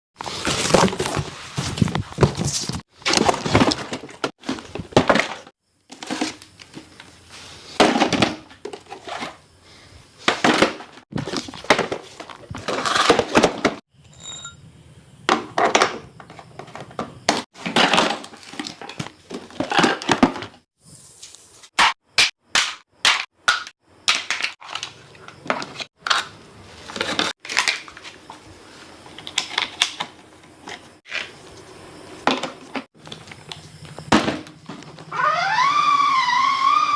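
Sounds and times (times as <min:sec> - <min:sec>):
plastic parts knocking and clicking: 0:15.3 - 0:20.6.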